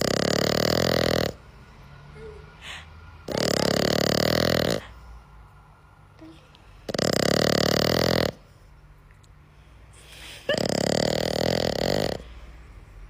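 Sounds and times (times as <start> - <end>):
small dog snoring: 0.0 - 1.4, 3.2 - 5.0, 6.2 - 8.5, 10.4 - 12.5
dog breathing quietly: 1.3 - 5.4.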